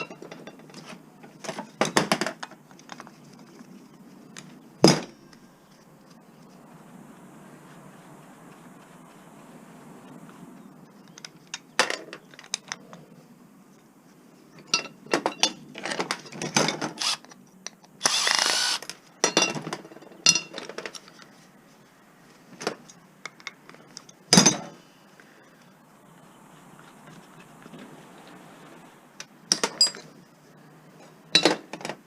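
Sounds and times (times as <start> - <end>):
short rasping burst: 17.0 - 17.2, 18.0 - 18.9.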